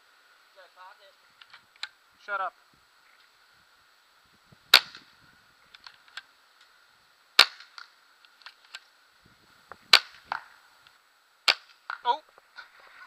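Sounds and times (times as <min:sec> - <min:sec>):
paintball shotgun pops: 0:04.7 - 0:05.1, 0:07.4 - 0:08.9, 0:09.9 - 0:10.5.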